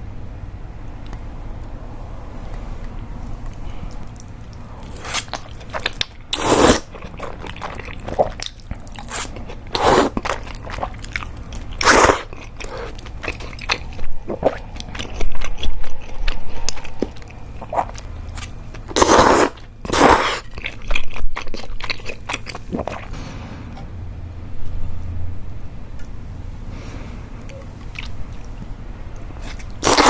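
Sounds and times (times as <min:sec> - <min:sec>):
wet chewing: 0:02.8 - 0:23.1, 0:29.4 - 0:30.0
slurping noodles: 0:04.8 - 0:11.0, 0:11.8 - 0:20.8, 0:29.4 - 0:30.0.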